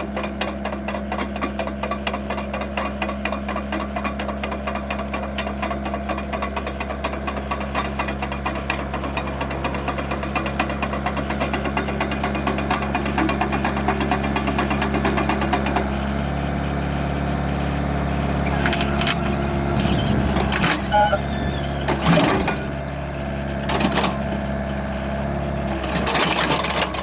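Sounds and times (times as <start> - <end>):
excavator diesel engine running: 0.0 - 27.0
fast rattling: 18.5 - 23.4.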